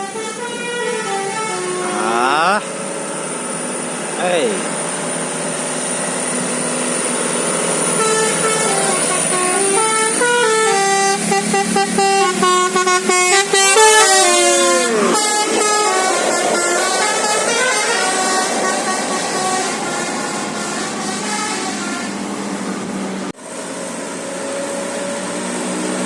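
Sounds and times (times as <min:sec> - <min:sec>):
bus musical horn melody: 0:00.0 - 0:02.7, 0:07.6 - 0:23.2.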